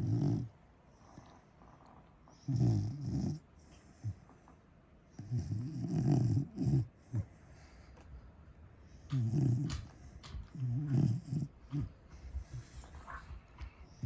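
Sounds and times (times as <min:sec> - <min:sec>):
dog snoring: 0:00.0 - 0:04.2, 0:05.2 - 0:07.4, 0:08.9 - 0:13.2.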